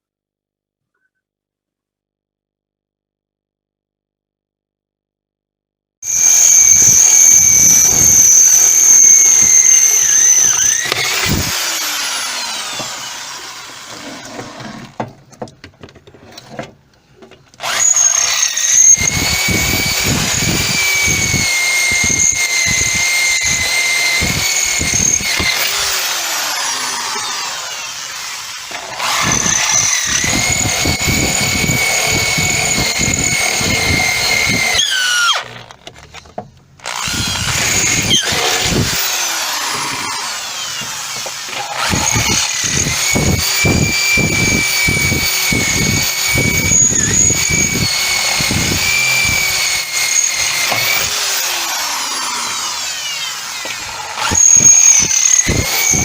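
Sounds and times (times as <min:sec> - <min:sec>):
electric drill whining: 0:06.0 - 0:15.0, 0:17.5 - 0:56.0.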